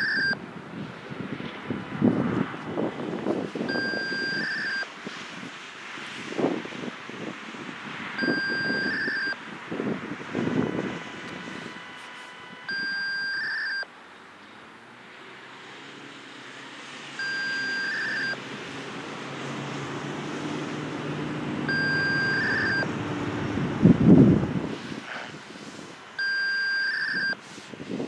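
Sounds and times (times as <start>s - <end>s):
electronic alarm beep with warble: 0.0s - 0.4s, 3.7s - 4.8s, 8.2s - 9.4s, 12.7s - 13.9s, 17.2s - 18.4s, 21.7s - 22.9s, 26.2s - 27.4s
vehicle passing: 0.0s - 13.8s, 14.6s - 27.4s.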